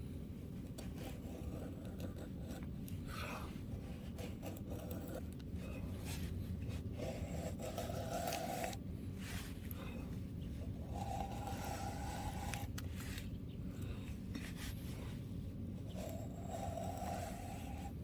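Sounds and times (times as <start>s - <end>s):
knife scraping wood: 0.8s - 8.8s, 10.6s - 13.3s, 15.9s - 18.0s.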